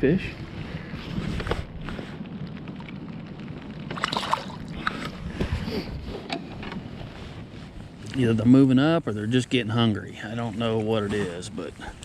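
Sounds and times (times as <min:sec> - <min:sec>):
water washing: 0:03.9 - 0:05.2.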